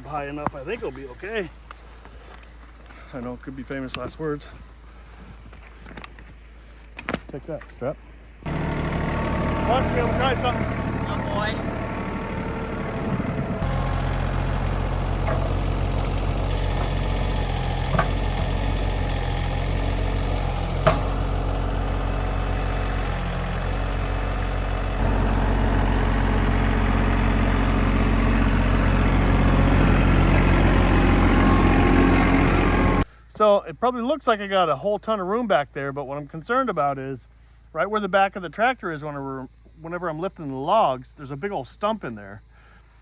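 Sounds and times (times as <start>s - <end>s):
tractor engine running: 8.4s - 33.1s.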